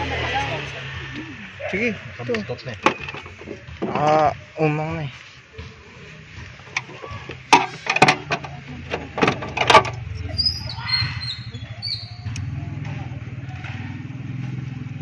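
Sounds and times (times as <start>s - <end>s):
car engine idling: 0.0s - 10.3s.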